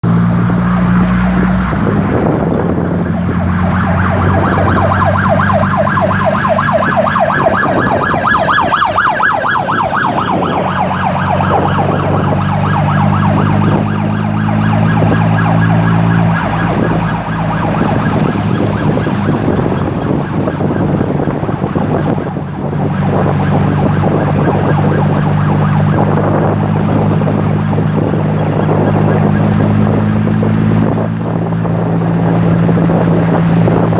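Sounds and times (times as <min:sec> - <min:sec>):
ambulance siren wailing: 0:00.0 - 0:33.9
low engine hum: 0:00.0 - 0:33.9.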